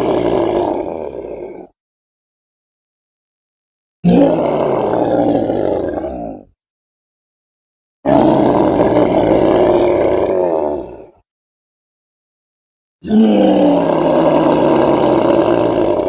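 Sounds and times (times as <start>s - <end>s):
great ape roaring calls: 0.0s - 1.8s, 4.0s - 6.5s, 8.1s - 11.2s, 13.0s - 16.0s.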